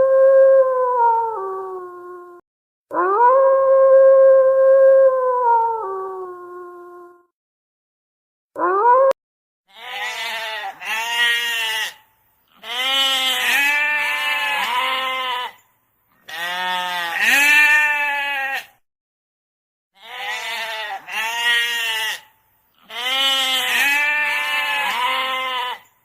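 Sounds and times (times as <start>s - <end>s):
livestock bleating: 9.7s - 15.6s, 16.2s - 18.8s, 20.0s - 25.9s.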